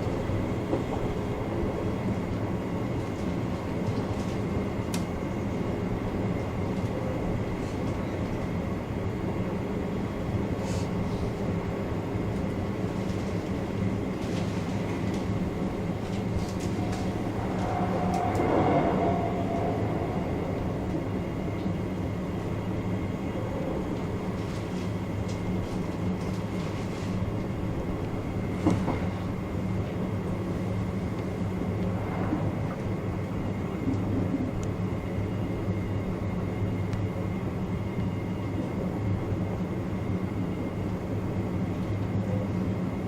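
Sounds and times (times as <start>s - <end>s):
electric train running hum: 0.0s - 43.0s
faint high whine: 14.2s - 43.0s.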